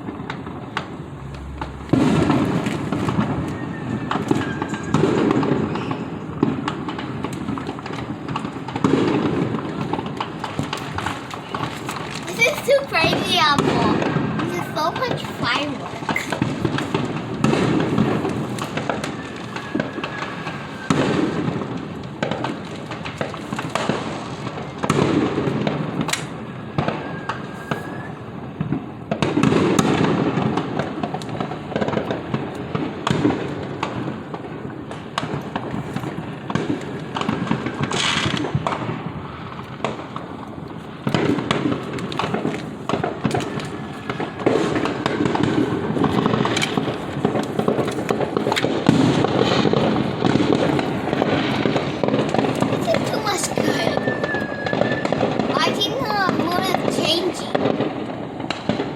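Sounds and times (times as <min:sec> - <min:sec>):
firework bangs and crackles: 0:00.0 - 0:58.9
firework whistles: 0:00.7 - 0:06.7, 0:10.6 - 0:22.4, 0:26.2 - 0:28.4, 0:40.8 - 0:58.9.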